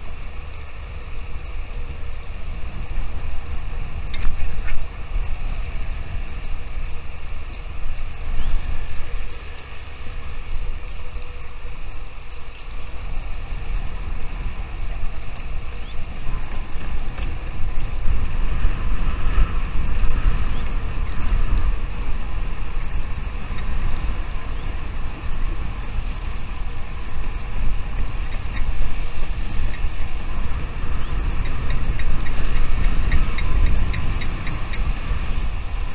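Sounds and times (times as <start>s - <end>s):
wind buffeting microphone: 0.0s - 35.9s.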